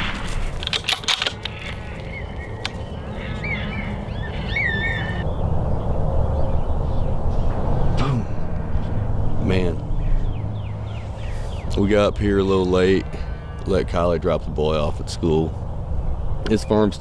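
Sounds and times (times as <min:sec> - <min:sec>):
low wind rumble: 0:00.0 - 0:17.0
short bird calls: 0:01.5 - 0:05.2.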